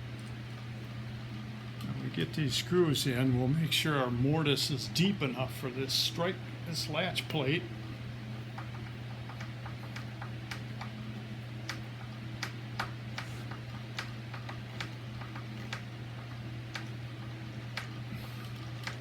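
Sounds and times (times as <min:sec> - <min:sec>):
low electrical hum: 0:00.0 - 0:19.0.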